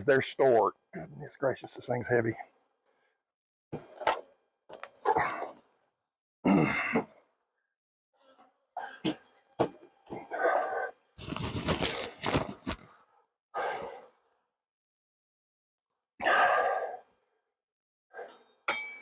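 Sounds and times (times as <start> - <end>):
man breathing heavily and sighing: 6.5 - 7.1.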